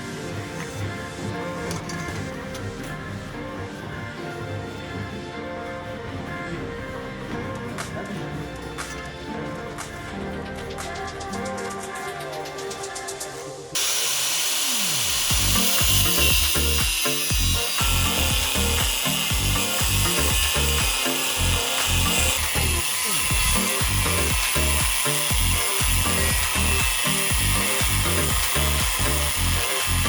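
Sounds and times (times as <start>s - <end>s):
background music with beat: 0.0s - 13.8s, 15.1s - 30.0s
power tool rasping: 13.8s - 30.0s.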